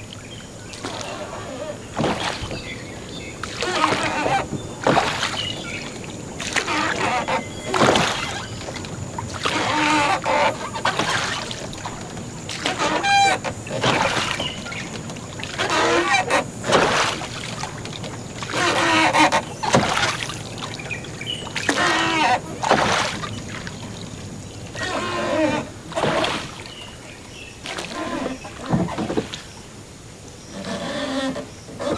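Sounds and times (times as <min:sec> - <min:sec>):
water splashing: 0:00.0 - 0:30.7
ferry creaking and squealing: 0:00.8 - 0:17.2, 0:18.4 - 0:22.9, 0:24.6 - 0:26.3, 0:27.8 - 0:29.2, 0:30.5 - 0:31.9.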